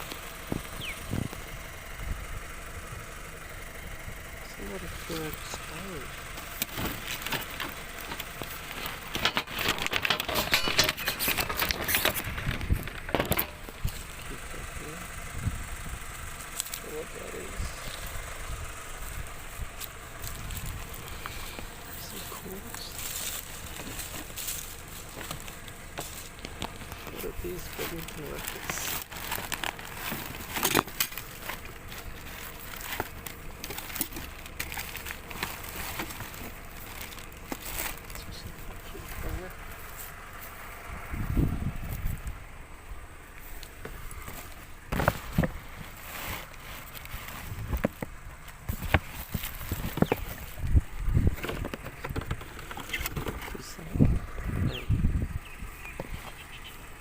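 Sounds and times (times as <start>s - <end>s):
junk rattling being rummaged: 4.6s - 41.1s, 43.4s - 54.6s
rubbish knocking and clattering: 6.6s - 13.8s, 43.8s - 47.0s, 51.3s - 53.6s.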